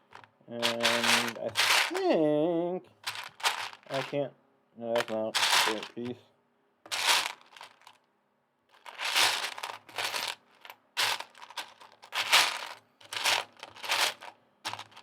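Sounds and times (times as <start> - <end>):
plastic pieces clattering: 0.0 - 2.2, 3.0 - 4.2, 5.0 - 6.2, 6.9 - 8.0, 8.8 - 15.0.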